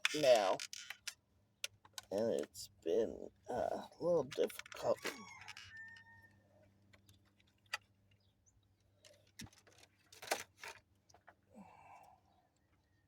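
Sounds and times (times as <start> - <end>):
plastic clicks and rattles: 0.0 - 2.5, 4.2 - 6.1, 9.0 - 11.4.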